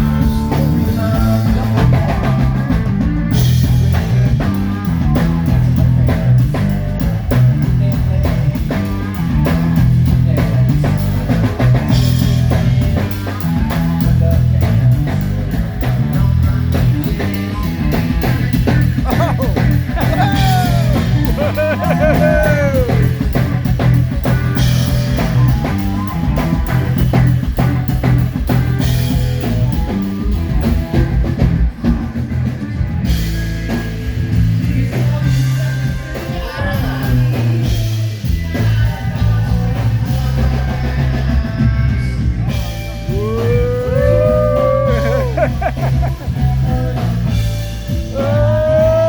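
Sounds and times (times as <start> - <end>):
rock band playing: 0.0 - 49.0
person singing: 18.6 - 23.5, 34.5 - 49.0.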